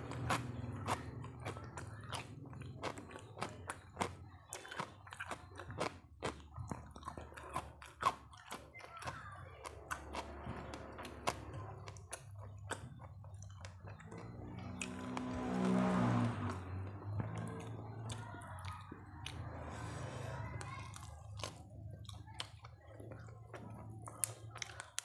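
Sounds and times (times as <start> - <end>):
chewing crisp food: 0.0 - 25.0
low droning sound: 14.0 - 18.2.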